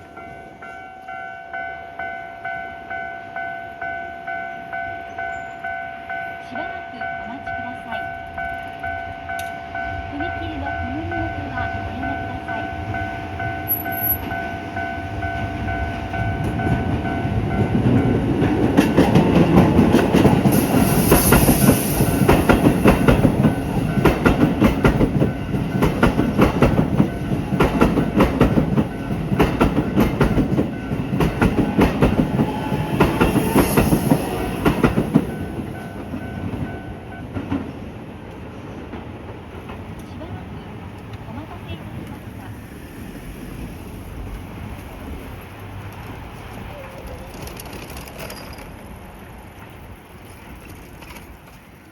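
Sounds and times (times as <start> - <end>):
crossing warning bell ringing: 0.0 - 37.7
train wheels clattering over rail joints: 12.4 - 40.3, 44.2 - 49.1.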